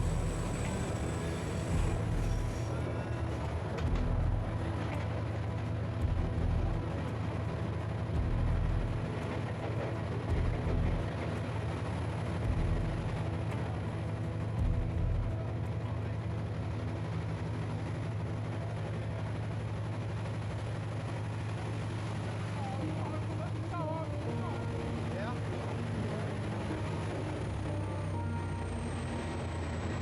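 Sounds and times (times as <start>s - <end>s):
train rumble and hum: 0.0s - 30.0s
deep thumps: 6.0s - 6.8s, 8.2s - 9.0s, 12.4s - 13.2s.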